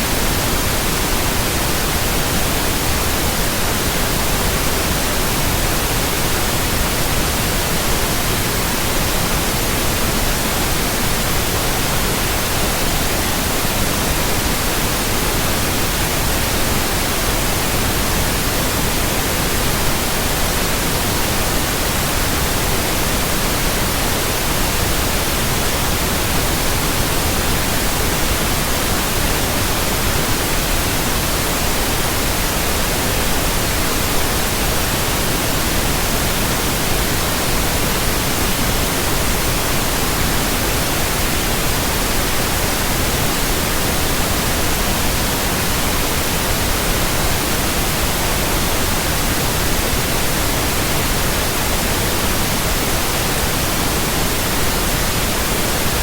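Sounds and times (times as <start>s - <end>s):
white noise hiss: 0.0s - 56.0s.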